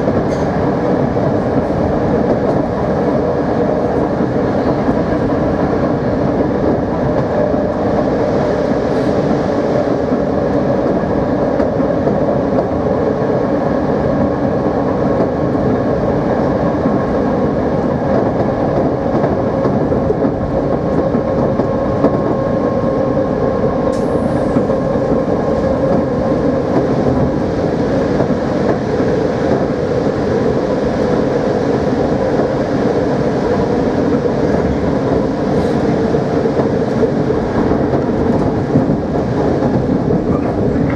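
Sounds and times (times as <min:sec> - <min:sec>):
rolling rail noise: 0:00.0 - 0:40.9.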